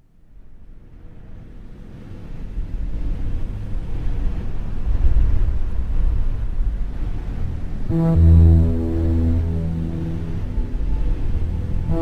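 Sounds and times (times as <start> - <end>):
deep low rumbling drone: 3.2 - 12.0.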